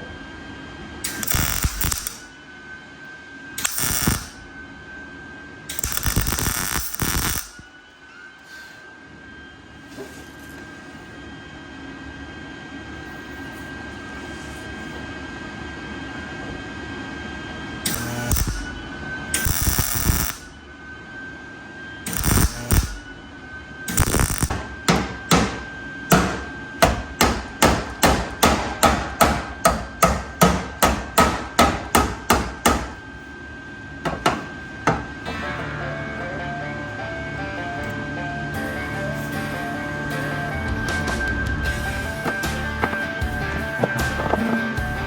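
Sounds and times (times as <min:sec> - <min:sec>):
power tool whining: 0:01.0 - 0:02.4, 0:03.6 - 0:04.4, 0:05.7 - 0:07.7, 0:17.8 - 0:20.6, 0:22.0 - 0:23.2, 0:23.9 - 0:30.5, 0:38.8 - 0:45.0
harsh crackling metal noise: 0:22.1 - 0:23.0, 0:23.9 - 0:24.6, 0:41.7 - 0:45.0.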